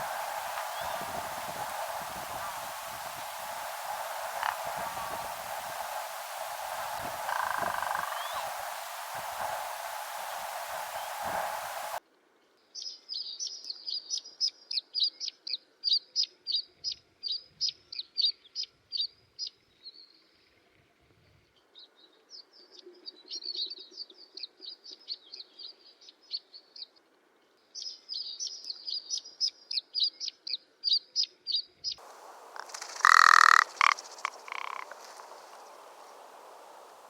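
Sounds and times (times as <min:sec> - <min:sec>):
bird singing sharp high notes: 0:00.0 - 0:12.0, 0:32.5 - 0:37.0.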